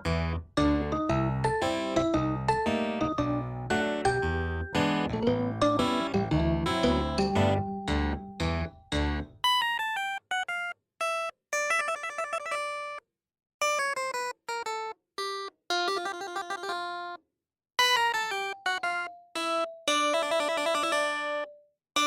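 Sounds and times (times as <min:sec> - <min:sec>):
keyboard background music: 0:00.0 - 0:09.4.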